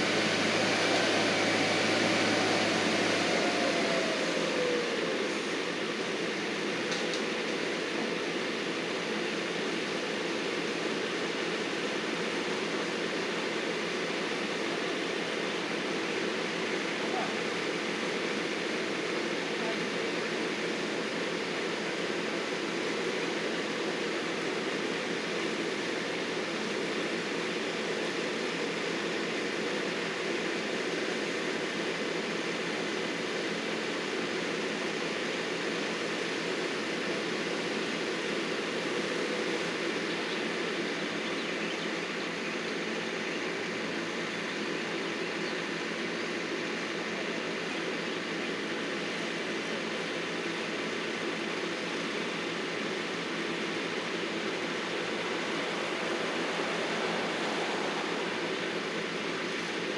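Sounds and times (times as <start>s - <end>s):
heavy equipment engine running: 0.0s - 7.0s, 51.6s - 59.9s.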